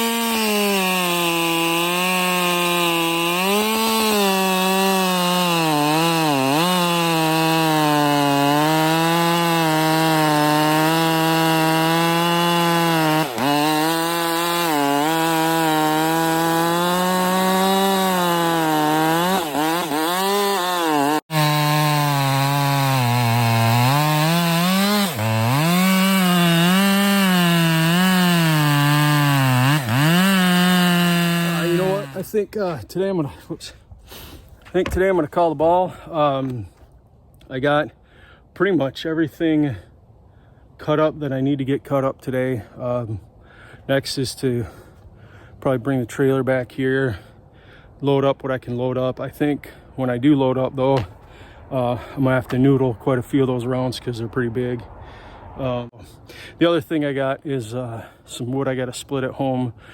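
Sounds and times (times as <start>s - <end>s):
chainsaw cutting wood: 0.0s - 32.5s, 50.9s - 52.8s.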